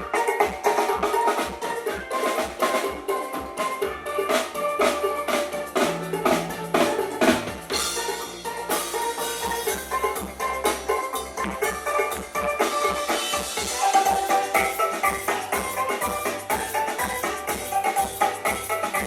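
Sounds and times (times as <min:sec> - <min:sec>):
band playing: 0:00.0 - 0:19.0
drum kit strikes: 0:00.0 - 0:19.0
bass line: 0:04.7 - 0:17.8.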